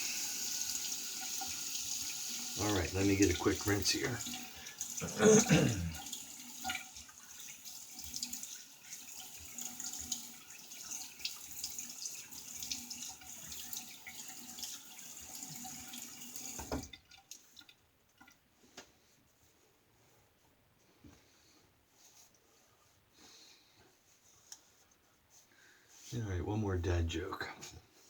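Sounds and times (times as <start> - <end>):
tap water running into sink: 0.0 - 18.4.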